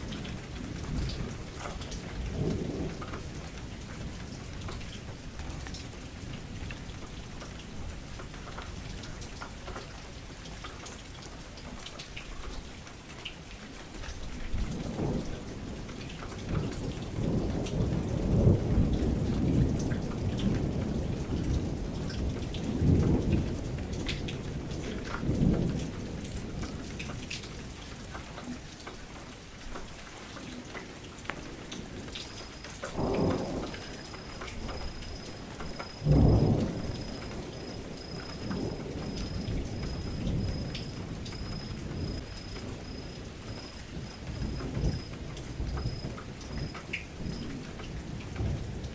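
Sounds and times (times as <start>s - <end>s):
thunder rumbling: 0.0s - 7.9s, 14.5s - 28.0s, 30.4s - 48.9s
steady rain falling: 0.0s - 48.9s.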